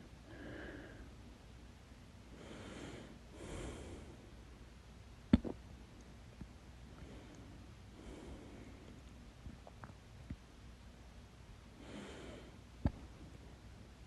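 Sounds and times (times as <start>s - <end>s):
woman breathing: 0.2s - 1.2s, 2.3s - 4.3s, 7.0s - 9.0s, 11.8s - 12.6s.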